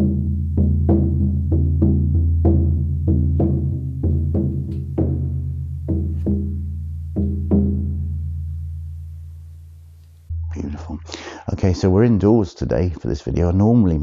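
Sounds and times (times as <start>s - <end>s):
low drum ring: 0.0s - 11.2s.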